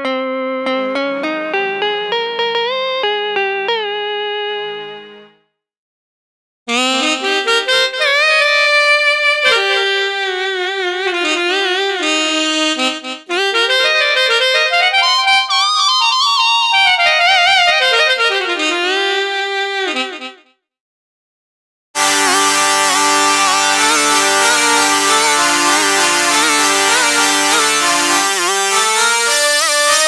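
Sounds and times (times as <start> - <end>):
synthesizer reed lead melody: 0.0 - 5.3, 22.0 - 30.0.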